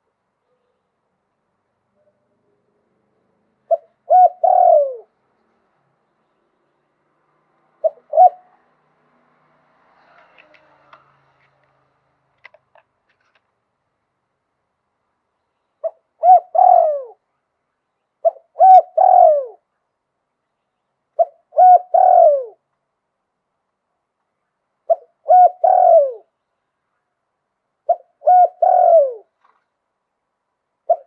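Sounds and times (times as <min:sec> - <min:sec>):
dove cooing: 0:03.7 - 0:05.2, 0:07.8 - 0:08.7, 0:15.8 - 0:17.2, 0:18.2 - 0:19.6, 0:21.2 - 0:22.6, 0:24.9 - 0:26.3, 0:27.9 - 0:29.4.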